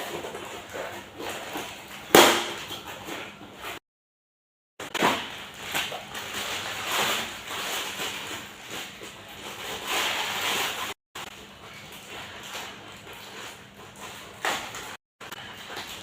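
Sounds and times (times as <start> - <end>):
packaging crinkling and rustling: 5.0 - 16.0.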